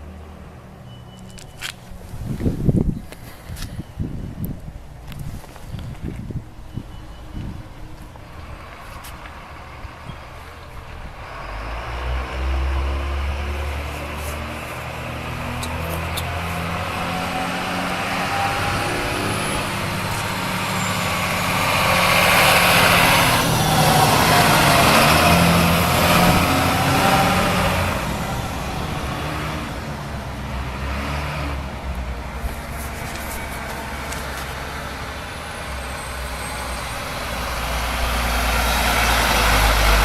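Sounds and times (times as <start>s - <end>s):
passing traffic: 0.0s - 40.0s
large vehicle engine running: 8.4s - 40.0s.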